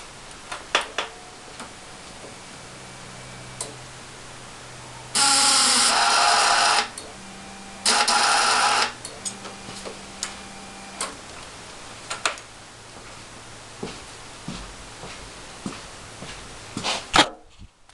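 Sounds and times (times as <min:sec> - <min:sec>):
faint steady hum: 0:00.0 - 0:17.9
motorcycle electric starter cranking: 0:05.2 - 0:07.0, 0:07.8 - 0:09.4.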